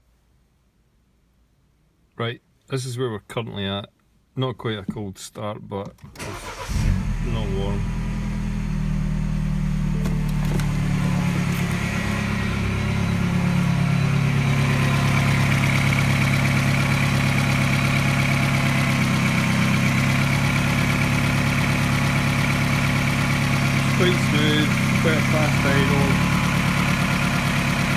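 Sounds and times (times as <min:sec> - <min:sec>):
car engine fast idle: 0:06.1 - 0:27.9.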